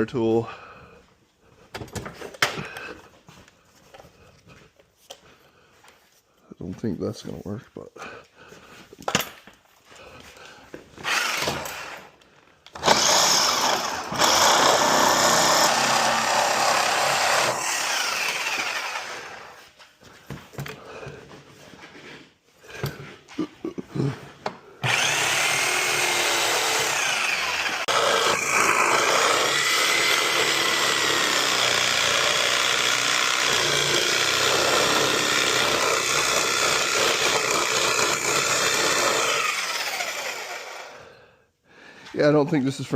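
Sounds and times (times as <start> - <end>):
power saw cutting metal: 11.0 - 12.2, 12.8 - 19.6, 24.8 - 41.0.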